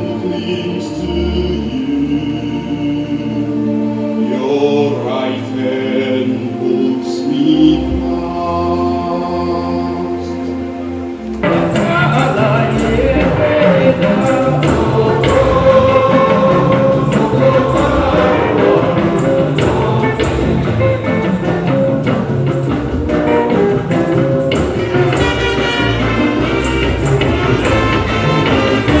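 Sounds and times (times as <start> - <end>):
accompanying instruments: 0.0 - 29.0
church choir singing: 0.0 - 29.0
steady percussion beat: 11.4 - 29.0.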